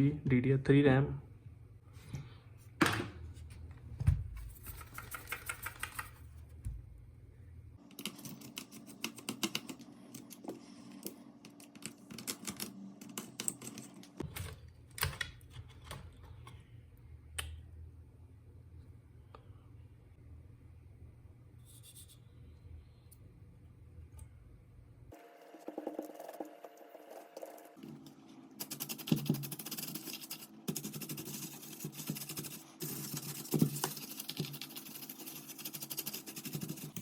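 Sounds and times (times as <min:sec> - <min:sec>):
low steady hum: 0:00.0 - 0:37.0.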